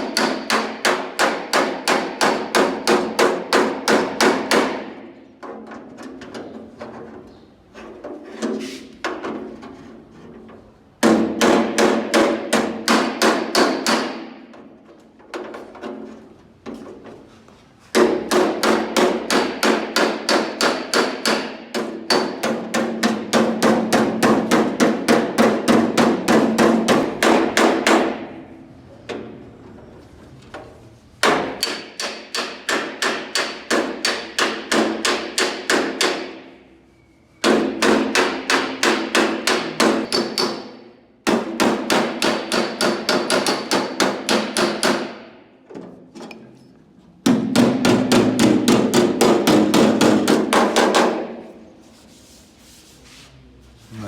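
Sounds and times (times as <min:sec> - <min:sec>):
hammer beating sheet metal: 0:00.0 - 0:05.7, 0:11.0 - 0:14.7, 0:17.9 - 0:29.4, 0:31.2 - 0:36.6, 0:37.4 - 0:45.6, 0:47.2 - 0:51.7.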